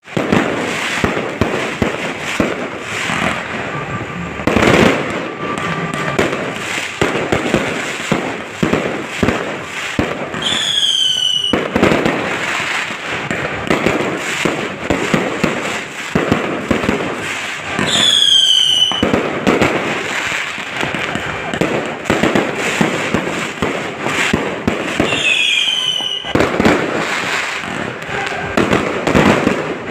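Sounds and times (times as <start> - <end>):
fireworks and firecrackers exploding: 0.0 - 29.9.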